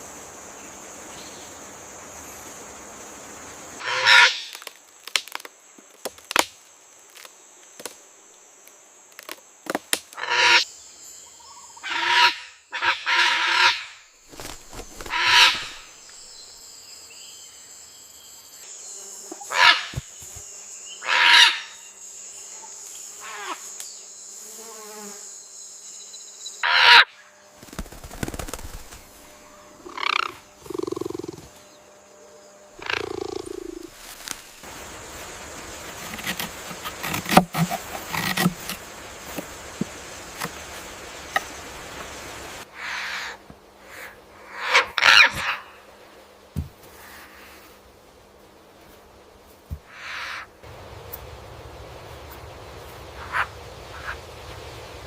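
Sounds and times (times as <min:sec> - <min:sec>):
parrots squawking: 0:15.1 - 0:15.8, 0:26.6 - 0:27.0.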